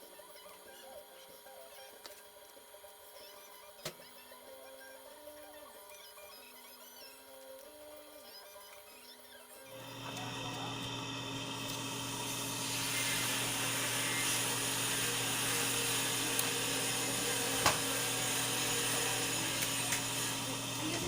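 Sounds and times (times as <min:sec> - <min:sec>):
machine hum with hiss: 0:09.7 - 0:21.0.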